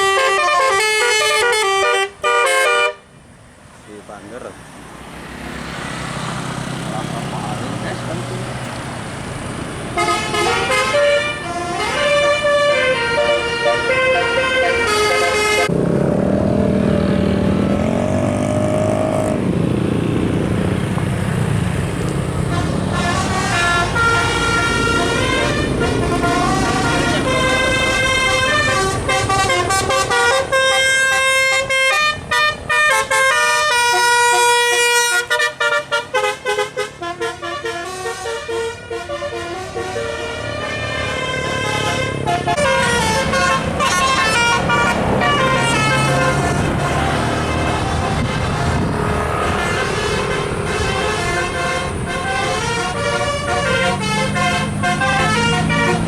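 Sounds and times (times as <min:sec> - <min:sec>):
musical air horns playing tunes: 0:00.0 - 0:03.0, 0:10.0 - 0:15.7, 0:22.4 - 0:56.0.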